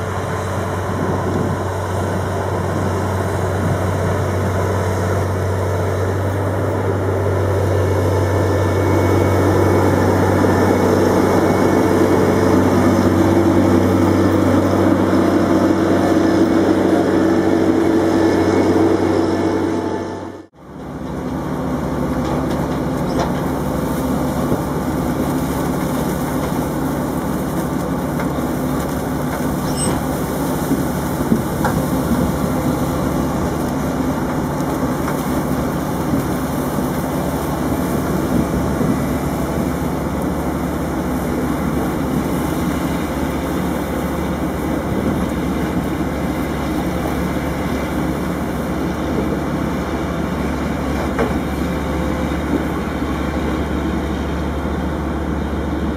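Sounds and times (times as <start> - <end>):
diesel engine droning: 0.0 - 55.9.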